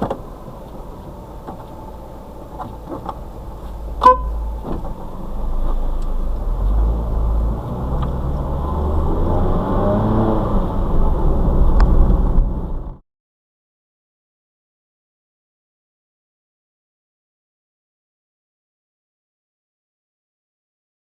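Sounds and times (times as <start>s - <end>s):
car engine running: 0.0s - 13.0s
brief sharp beep: 4.0s - 4.6s.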